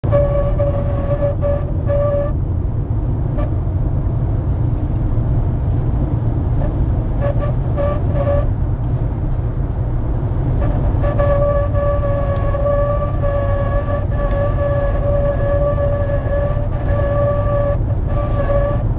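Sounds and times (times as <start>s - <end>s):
high wind whistle: 0.0s - 4.3s, 6.2s - 18.9s
low road rumble: 0.0s - 18.9s.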